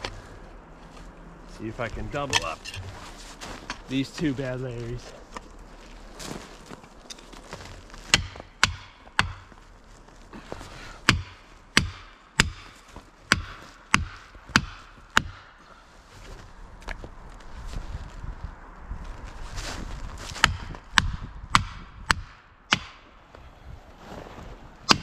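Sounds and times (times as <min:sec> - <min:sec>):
wedges being pounded: 0:08.1 - 0:09.5, 0:11.1 - 0:15.5, 0:20.4 - 0:23.0.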